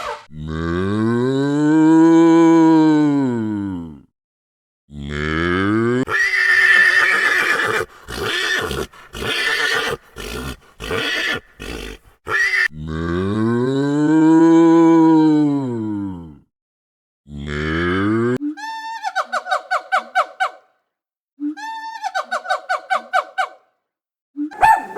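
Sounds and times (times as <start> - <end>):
horse whinnying: 6.1 - 12.7.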